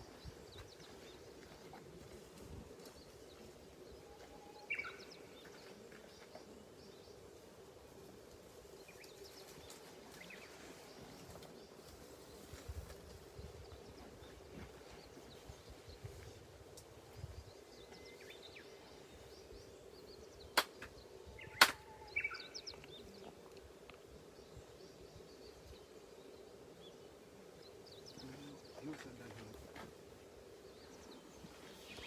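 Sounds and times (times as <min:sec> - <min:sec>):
birds chirping: 0:00.0 - 0:32.0
sharp handclaps: 0:20.6 - 0:20.9, 0:21.6 - 0:21.8.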